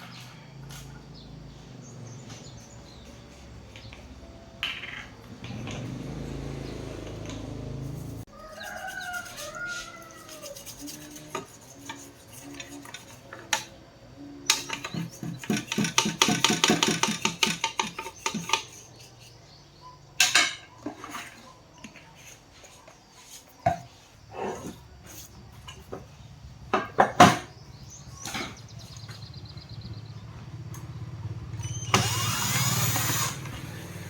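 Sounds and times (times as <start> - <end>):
chicken calling: 8.3 - 10.7
metal tools clicking and clattering: 14.5 - 19.4.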